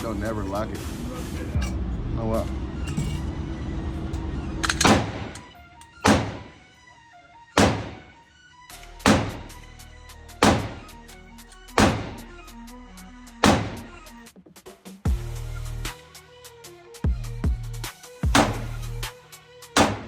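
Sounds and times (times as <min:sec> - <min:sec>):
background music: 0:00.0 - 0:20.0
pistol shots: 0:04.7 - 0:06.7, 0:07.6 - 0:08.2, 0:09.0 - 0:09.6, 0:10.4 - 0:11.0, 0:11.8 - 0:12.3, 0:13.4 - 0:14.0, 0:18.3 - 0:19.0, 0:19.8 - 0:20.0.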